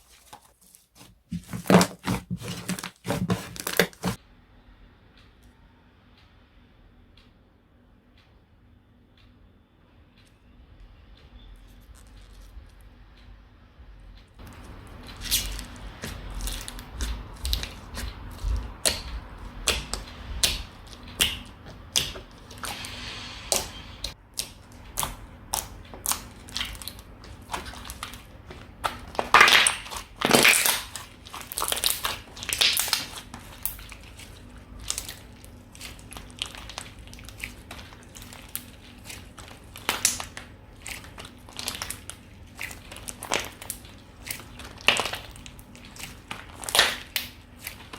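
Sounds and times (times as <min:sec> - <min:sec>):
slime clicking and popping: 0:15.2 - 0:22.2, 0:24.3 - 0:47.9.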